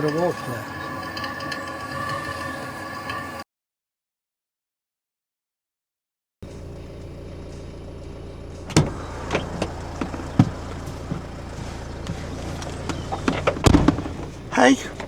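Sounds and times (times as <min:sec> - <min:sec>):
vehicle engine humming: 0:00.0 - 0:02.8, 0:06.4 - 0:15.0
sharp knocks and clunks: 0:08.6 - 0:15.0.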